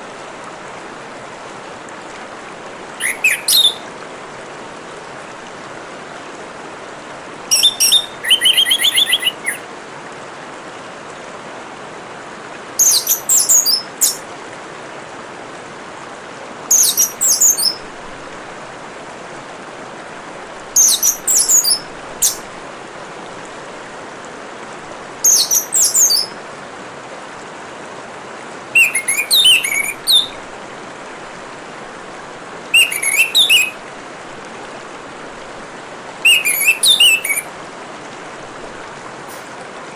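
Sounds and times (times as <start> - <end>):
trickle of running water: 0.0 - 39.9
thrush warbling song: 3.0 - 3.9, 7.5 - 9.6, 28.8 - 30.4, 32.7 - 33.8, 36.2 - 37.5.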